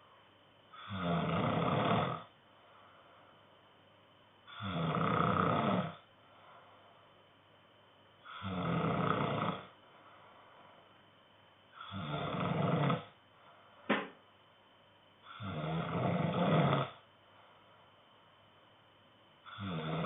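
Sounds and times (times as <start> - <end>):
man snoring: 0.7 - 2.3, 4.5 - 6.1, 8.2 - 9.8, 11.8 - 13.2, 15.3 - 17.0, 19.5 - 20.0.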